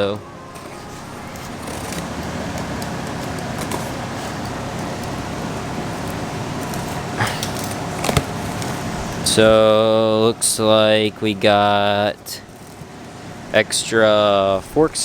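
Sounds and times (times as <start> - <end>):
packaging rustling: 0.4 - 9.8, 12.3 - 13.5.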